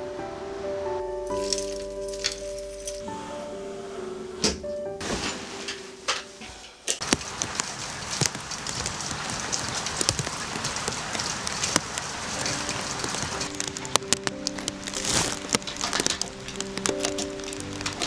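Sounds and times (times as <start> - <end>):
soft music notes: 0.0 - 7.0, 12.3 - 18.0
rain hissing: 0.0 - 18.0
sharp drips: 6.1 - 18.0.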